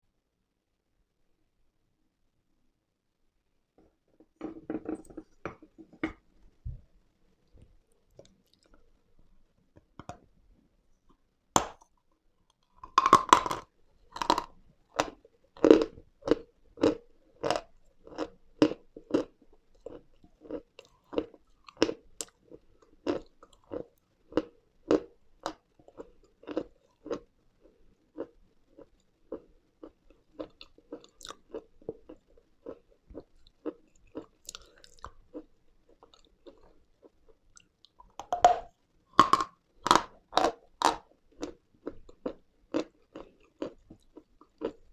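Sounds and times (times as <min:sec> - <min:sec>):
crunchy chewing: 0:12.7 - 0:44.9.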